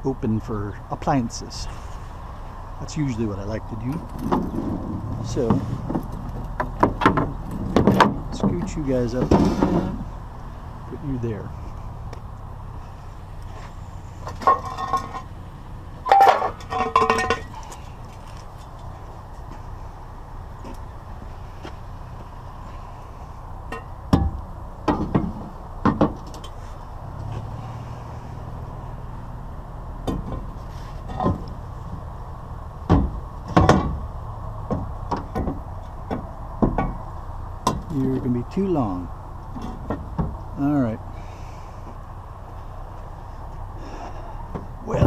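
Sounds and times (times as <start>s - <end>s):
steady low hum: 0.0s - 45.0s
metal scrap clanking: 3.9s - 10.1s, 14.1s - 18.8s, 23.7s - 28.0s, 30.0s - 31.6s, 32.9s - 34.1s.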